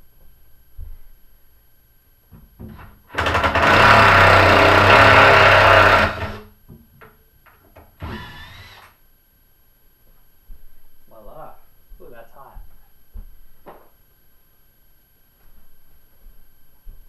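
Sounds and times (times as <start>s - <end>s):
power drill driving a screw: 3.1s - 6.5s, 8.0s - 9.0s.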